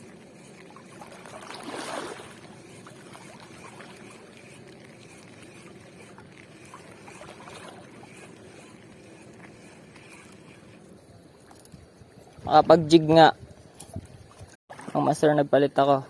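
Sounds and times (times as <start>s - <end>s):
shallow seawater lapping: 0.0s - 10.8s.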